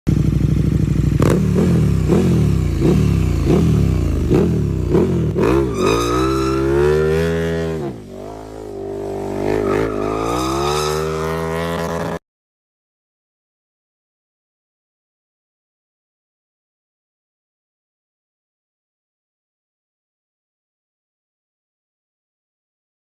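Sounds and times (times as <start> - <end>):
motorcycle engine revving: 0.1 - 12.2.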